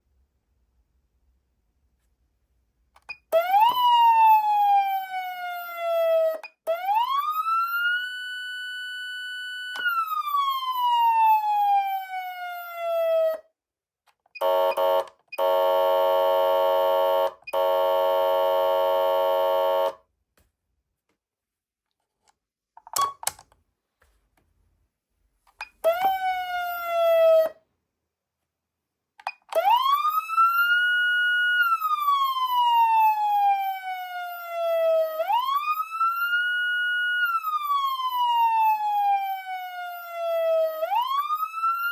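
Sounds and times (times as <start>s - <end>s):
buzzy horn blasts: 14.4s - 20.0s
electronic siren wailing: 14.4s - 20.0s.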